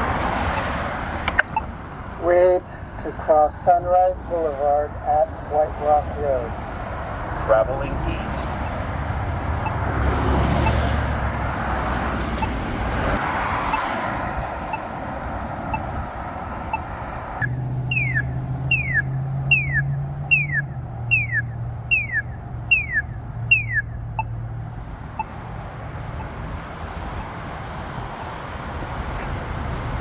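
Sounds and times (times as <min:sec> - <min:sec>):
traffic noise: 0:00.0 - 0:30.0
falling electronic chirps: 0:17.4 - 0:23.9
faint locator ticks: 0:21.9 - 0:30.0.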